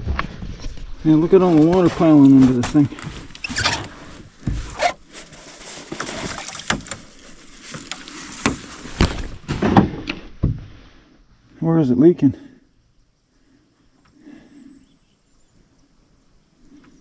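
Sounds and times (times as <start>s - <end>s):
water splashing: 5.2s - 9.5s
knocks on canoe hull: 7.8s - 10.7s.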